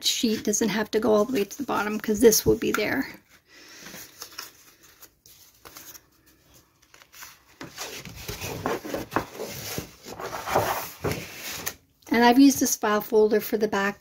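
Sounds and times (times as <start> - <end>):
paper rustling and scraping: 3.2 - 11.8.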